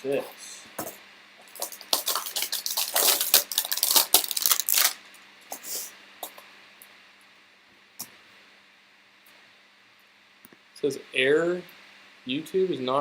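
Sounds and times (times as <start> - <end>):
packaging crinkling and tearing: 1.4 - 5.1.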